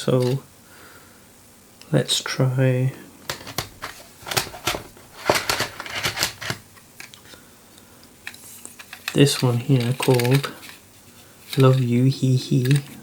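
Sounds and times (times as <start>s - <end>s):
small plastic items clicking: 3.3s - 7.3s, 8.3s - 10.8s, 11.4s - 11.9s, 12.5s - 13.0s.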